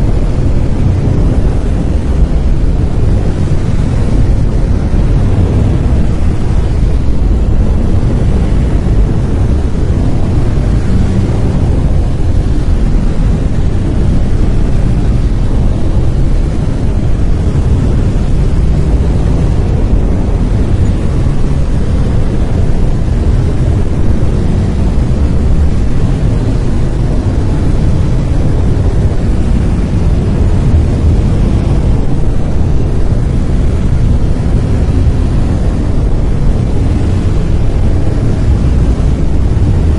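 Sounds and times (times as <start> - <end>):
brown noise rumbling hiss: 0.0 - 39.9.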